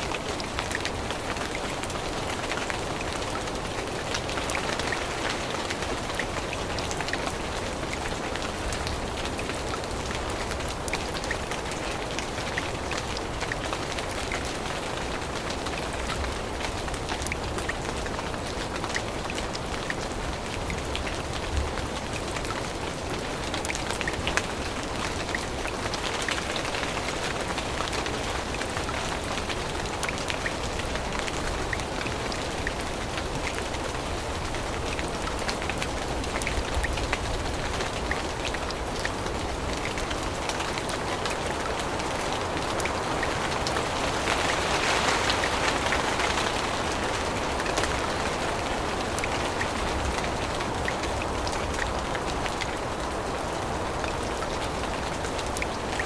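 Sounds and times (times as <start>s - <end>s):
rain falling through foliage: 0.0s - 56.0s
raindrop ticks: 15.3s - 56.0s.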